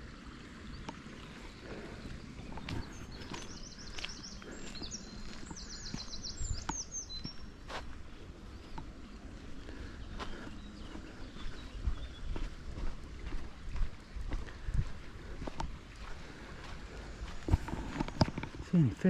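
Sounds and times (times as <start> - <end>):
faint outdoor background: 0.0 - 19.0
songbird singing: 0.0 - 19.0
footsteps clicking: 1.7 - 8.0, 10.2 - 18.7.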